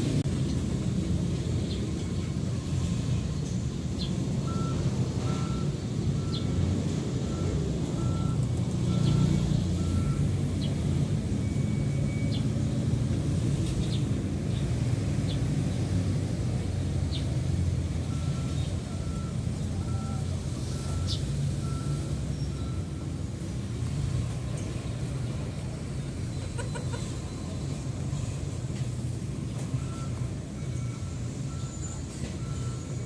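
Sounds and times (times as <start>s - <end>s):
low engine rumble: 0.0s - 33.0s
reversing alarm beeping: 4.4s - 10.6s, 11.3s - 12.8s, 18.0s - 23.4s, 29.6s - 33.0s.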